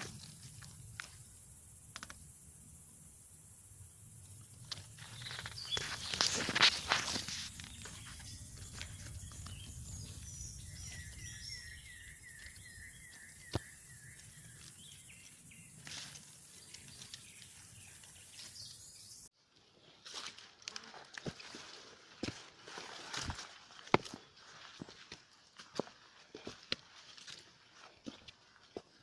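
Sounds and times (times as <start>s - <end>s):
bird chirping: 5.0s - 19.3s.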